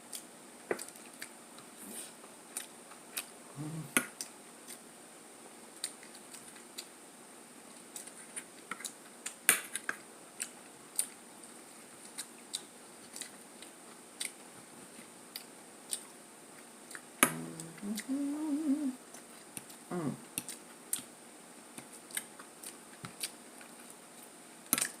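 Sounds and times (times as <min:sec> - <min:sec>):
person chewing food: 0:02.5 - 0:03.3, 0:07.9 - 0:11.2, 0:11.9 - 0:21.1, 0:21.8 - 0:24.0.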